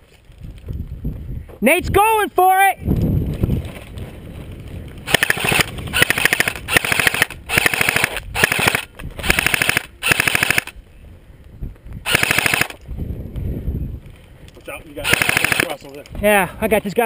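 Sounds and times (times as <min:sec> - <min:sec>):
airsoft gun full-auto bursts: 0:05.1 - 0:10.8, 0:12.0 - 0:12.8, 0:15.0 - 0:15.8.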